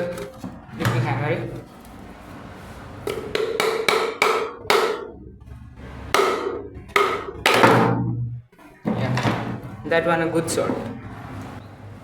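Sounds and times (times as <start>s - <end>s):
hammer tapping metal: 3.1s - 5.2s, 6.1s - 8.3s.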